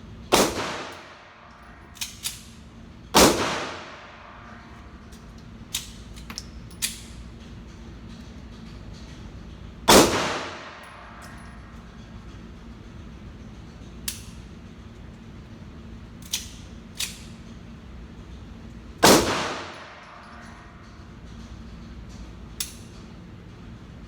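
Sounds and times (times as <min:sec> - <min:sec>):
steady low hum: 0:00.0 - 0:24.0
pistol shots: 0:00.3 - 0:01.2, 0:03.2 - 0:04.2, 0:09.9 - 0:11.0, 0:19.0 - 0:20.0.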